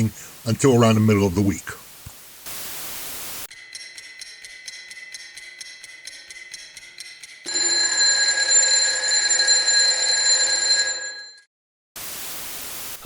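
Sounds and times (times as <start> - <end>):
sustained multi-pitch ring: 3.5 - 11.5
pulsing alarm tone: 7.4 - 11.4.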